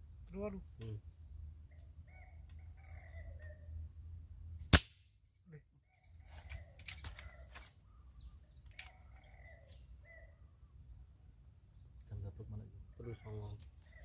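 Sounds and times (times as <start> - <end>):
gunshot: 4.7 - 5.0.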